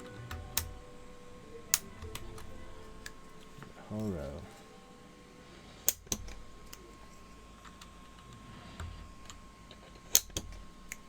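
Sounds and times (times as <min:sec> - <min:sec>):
keycaps clicking onto switches: 0:00.0 - 0:00.9, 0:01.7 - 0:04.4, 0:05.9 - 0:06.8.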